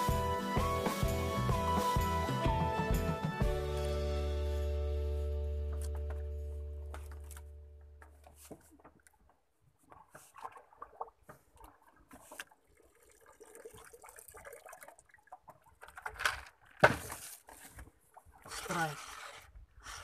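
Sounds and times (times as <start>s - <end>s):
background music: 0.0s - 7.6s
water splashing and lapping: 7.0s - 20.0s.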